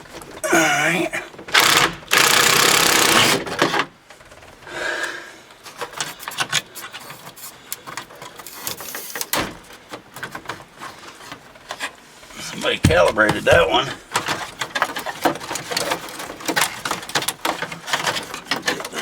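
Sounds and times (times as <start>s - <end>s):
tools clicking and knocking on metal: 12.6s - 19.0s.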